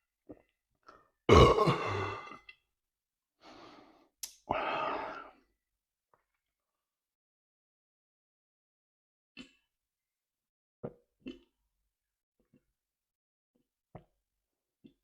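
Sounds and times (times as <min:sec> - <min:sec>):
man burping: 0:01.3 - 0:02.5.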